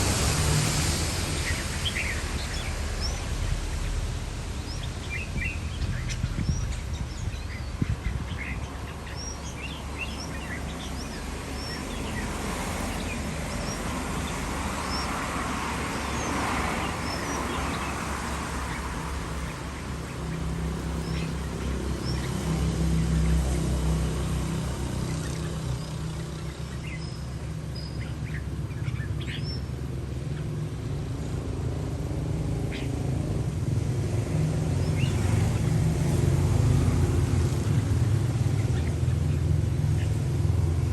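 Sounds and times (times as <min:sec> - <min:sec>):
hiss: 0:00.0 - 0:02.4
young bulbuls chirping: 0:00.8 - 0:40.9.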